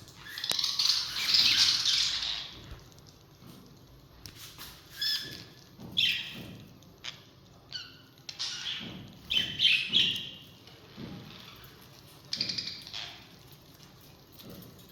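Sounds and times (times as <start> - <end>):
parrot squawking: 0.2 - 2.6.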